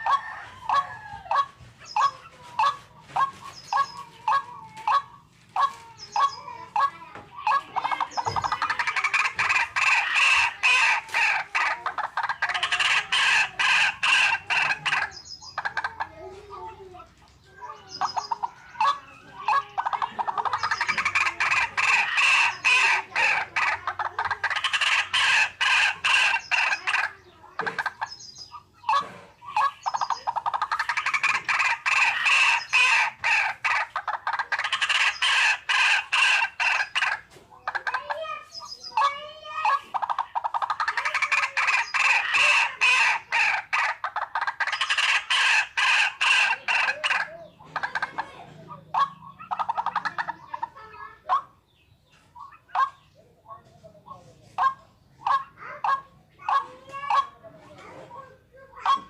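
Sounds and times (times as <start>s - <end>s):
waterhen harsh clucking: 0.0s - 16.8s, 17.4s - 59.0s
warbling bird call: 7.4s - 16.1s, 17.7s - 48.2s, 48.8s - 51.6s.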